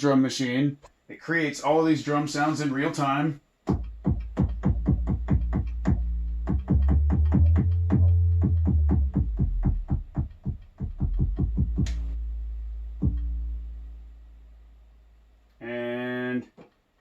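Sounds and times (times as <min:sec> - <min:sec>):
drum machine hits: 0:03.7 - 0:13.6
low sustained bass tone: 0:11.0 - 0:15.3.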